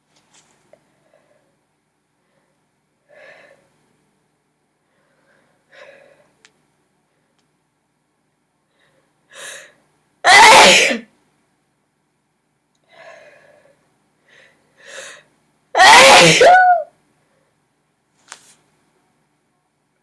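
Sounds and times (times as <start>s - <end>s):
woman gasping breaths: 2.2s - 3.7s, 4.9s - 6.4s, 8.8s - 9.8s, 12.9s - 15.3s
woman sneezing: 10.3s - 11.1s, 15.8s - 16.9s.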